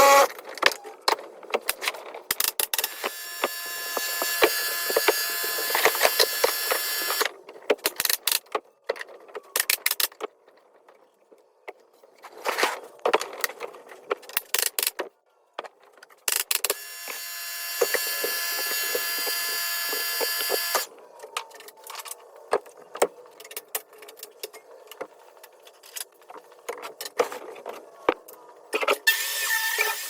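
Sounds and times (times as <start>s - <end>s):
power saw cutting wood: 0.0s - 0.3s, 2.8s - 7.3s, 16.7s - 20.9s, 29.1s - 30.0s.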